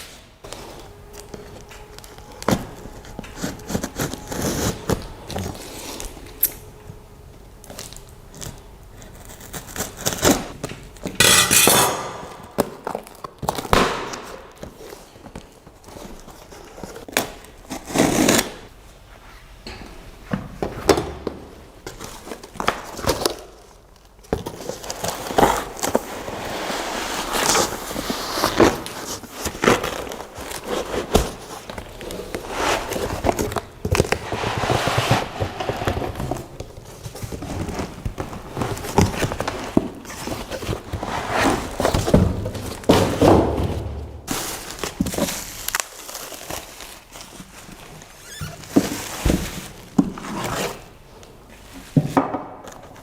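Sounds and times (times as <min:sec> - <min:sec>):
packaging rustling and crinkling: 0:00.0 - 0:11.1, 0:21.8 - 0:52.0
cardboard box being opened: 0:00.5 - 0:06.5, 0:24.6 - 0:50.9.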